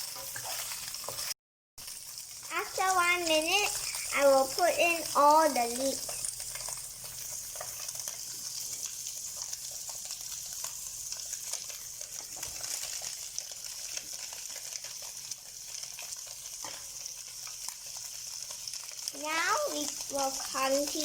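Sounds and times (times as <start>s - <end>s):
stirring clicks and scrapes: 0.0s - 1.3s
tofu sizzling in hot oil: 0.0s - 21.0s.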